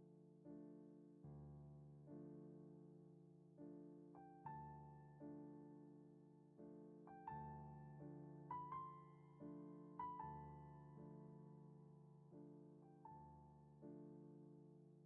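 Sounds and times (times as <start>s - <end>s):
slow piano chords and melody: 0.0s - 15.0s.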